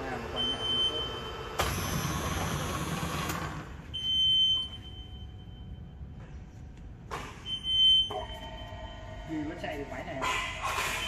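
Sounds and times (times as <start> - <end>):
low steady hum: 3.7 - 10.3.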